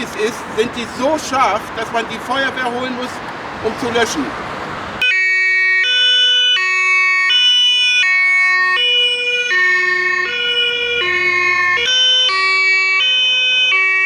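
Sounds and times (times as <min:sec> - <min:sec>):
fire engine two-tone siren: 0:05.0 - 0:14.0.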